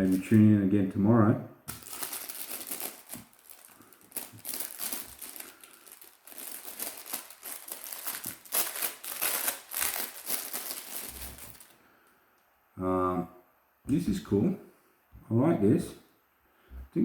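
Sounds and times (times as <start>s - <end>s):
plastic bag crinkling: 0.0s - 0.4s, 1.7s - 11.8s.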